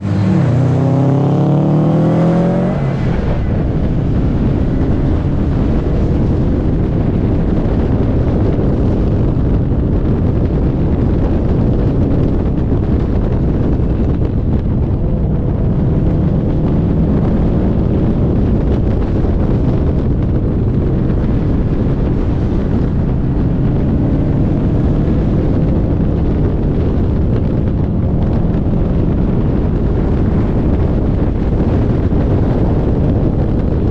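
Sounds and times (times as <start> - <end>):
car engine revving: 0.0 - 7.6, 11.6 - 27.5
road noise: 0.0 - 33.9
wind on microphone: 0.0 - 33.9.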